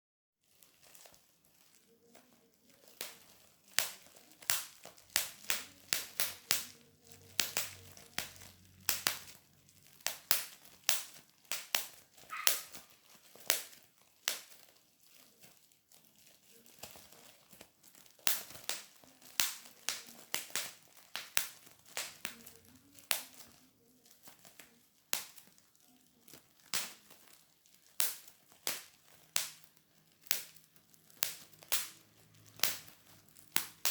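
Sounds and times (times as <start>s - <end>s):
sharp irregular pops: 2.9s - 14.7s, 28.0s - 33.9s.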